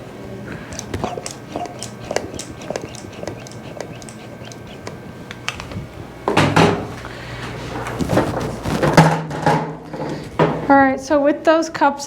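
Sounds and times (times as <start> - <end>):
cups scraping: 0.5 - 5.9
cupping cups clicking and knocking: 0.7 - 5.7.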